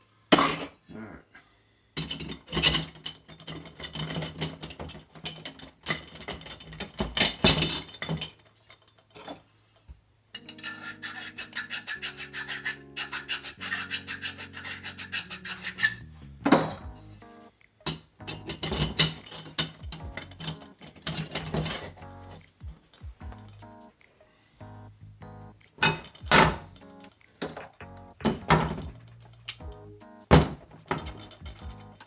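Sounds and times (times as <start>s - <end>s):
metal parts scraping and rattling: 2.0s - 9.5s, 10.4s - 16.8s, 17.9s - 23.7s, 25.8s - 32.0s
loud metal scrape: 10.4s - 16.2s.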